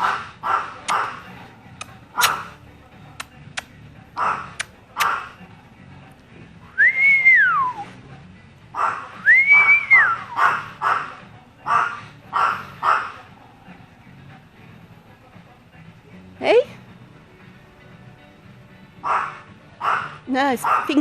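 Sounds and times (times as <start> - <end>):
small dog yapping: 0.0 - 1.2, 2.2 - 2.5, 4.2 - 5.3, 10.2 - 11.1, 11.7 - 13.2, 19.0 - 21.0
long rising and falling whistles: 6.8 - 7.8.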